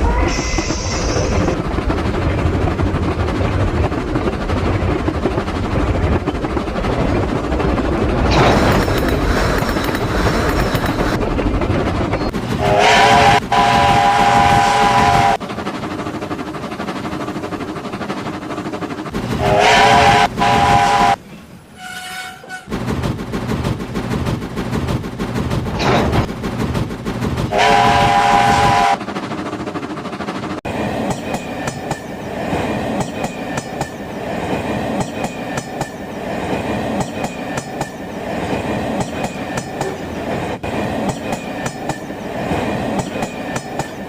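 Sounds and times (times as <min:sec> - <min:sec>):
train rumbling on rails: 0:00.0 - 0:44.0
train horn blasts: 0:12.6 - 0:15.4, 0:19.4 - 0:21.2, 0:21.8 - 0:22.7, 0:27.5 - 0:29.0.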